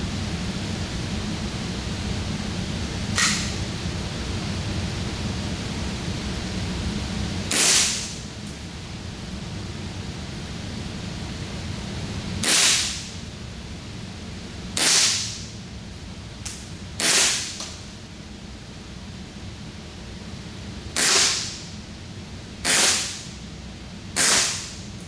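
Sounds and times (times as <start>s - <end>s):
steady background hiss: 0.0s - 25.0s
airsoft pistol shots: 7.5s - 8.2s, 12.4s - 13.1s, 14.8s - 15.4s, 17.0s - 17.6s, 21.0s - 21.6s, 22.6s - 23.3s, 24.2s - 24.8s.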